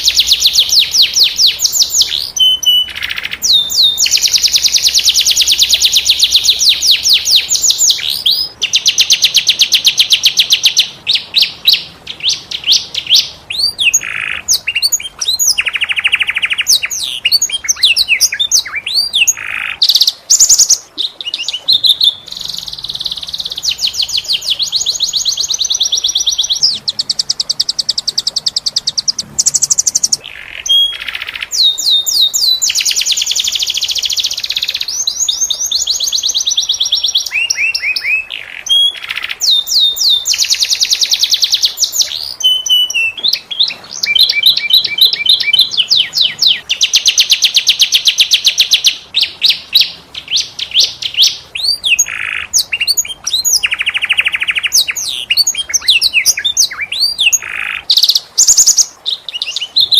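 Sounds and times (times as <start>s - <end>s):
canary singing trills: 0.0s - 59.9s.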